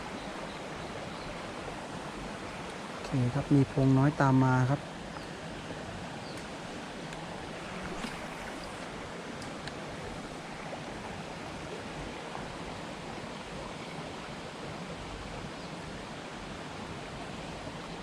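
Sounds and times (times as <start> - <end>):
water flowing over rocks: 0.0 - 18.0.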